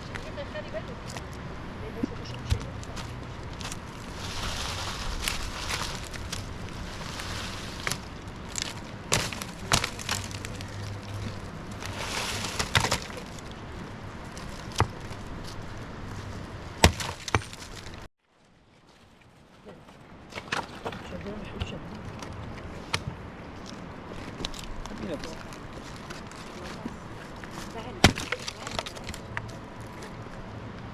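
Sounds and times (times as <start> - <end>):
dry branches snapping: 2.5 - 13.6, 16.8 - 18.1, 22.2 - 29.6
rustling: 2.5 - 20.5.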